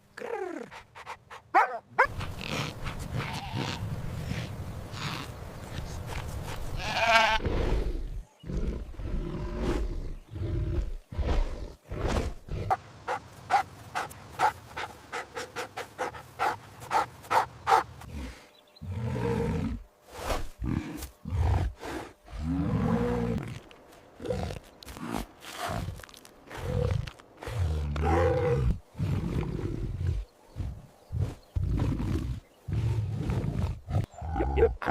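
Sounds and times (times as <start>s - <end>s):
goat or sheep bleating: 6.8s - 7.4s.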